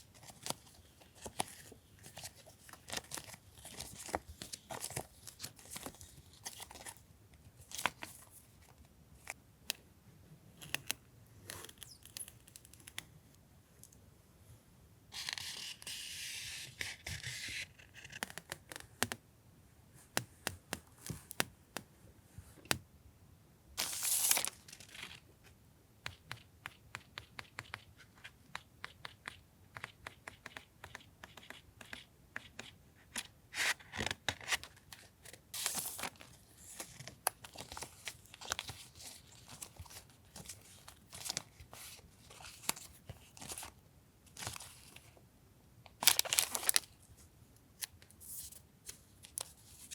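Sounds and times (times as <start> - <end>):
small paper taps and clicks: 18.1 - 19.2
paper rustling: 23.8 - 25.2, 33.5 - 43.7, 46.0 - 47.0.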